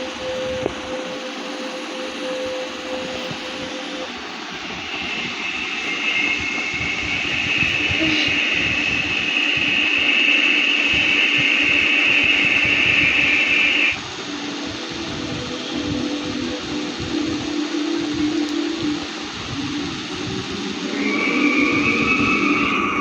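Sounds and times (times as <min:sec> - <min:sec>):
high hissing whine: 0:00.0 - 0:23.0
low steady hum: 0:13.9 - 0:23.0.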